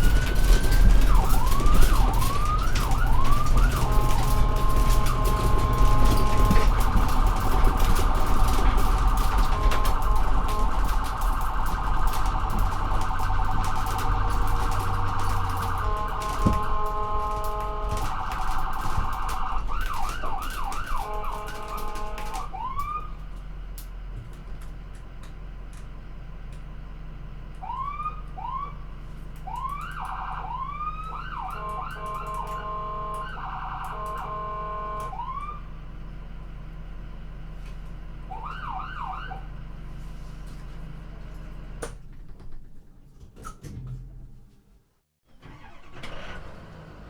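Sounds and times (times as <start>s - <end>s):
car alarm cycling tones: 0.0s - 23.2s, 29.4s - 35.6s.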